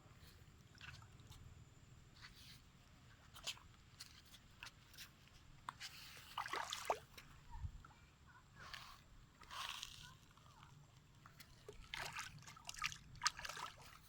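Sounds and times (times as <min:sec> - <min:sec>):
water splashes: 0:06.1 - 0:07.3, 0:11.2 - 0:14.0.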